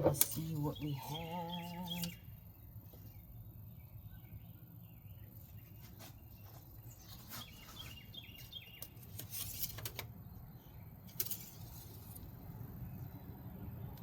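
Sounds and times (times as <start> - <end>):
bird chirping falling notes: 5.0 - 9.4.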